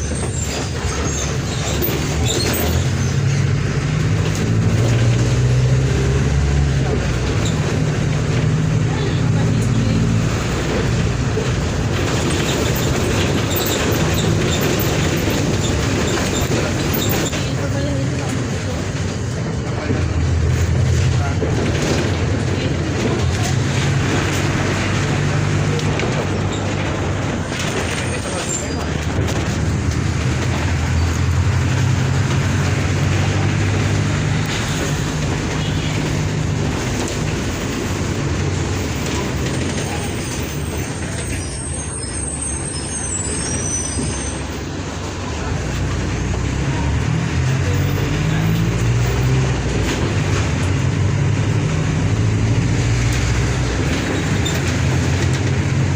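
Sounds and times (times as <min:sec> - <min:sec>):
bus diesel engine rumbling: 0:00.0 - 0:55.9.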